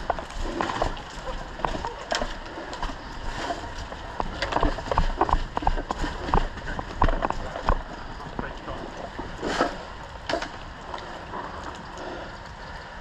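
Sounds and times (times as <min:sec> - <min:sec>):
running footsteps: 0:00.0 - 0:09.1
kit knocking and rattling: 0:03.9 - 0:08.5.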